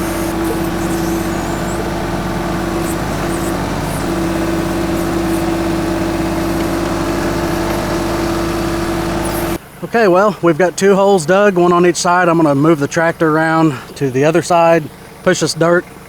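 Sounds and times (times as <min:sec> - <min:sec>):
steady whine: 0:00.0 - 0:09.6
tractor diesel engine running: 0:00.0 - 0:16.0.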